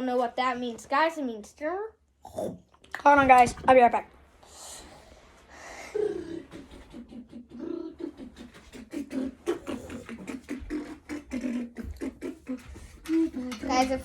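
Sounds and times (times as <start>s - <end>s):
child making mouth noises: 5.9s - 14.0s.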